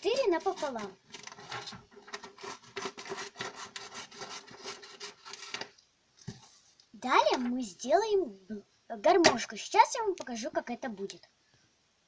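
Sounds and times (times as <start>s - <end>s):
scissors cutting paper: 1.4s - 5.6s.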